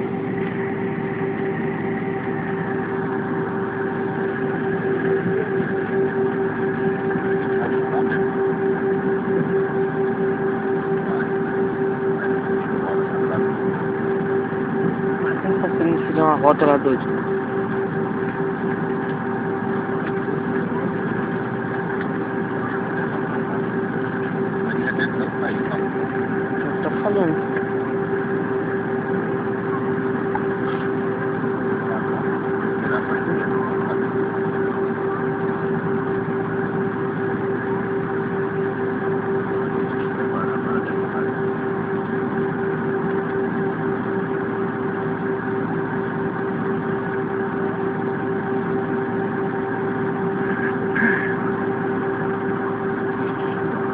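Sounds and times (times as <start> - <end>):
aircraft cabin engine hum: 0.0 - 53.9.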